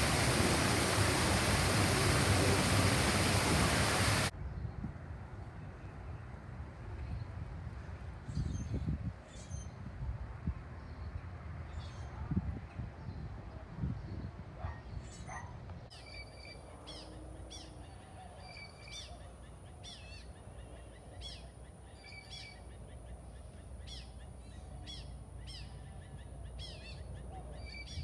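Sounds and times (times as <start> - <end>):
low background noise: 0.0 - 4.3.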